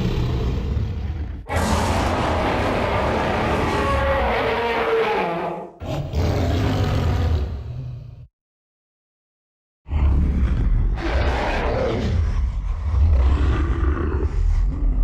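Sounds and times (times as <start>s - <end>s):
low rumbling growl: 0.0s - 4.6s, 9.9s - 15.0s
long loud roar: 0.0s - 7.8s.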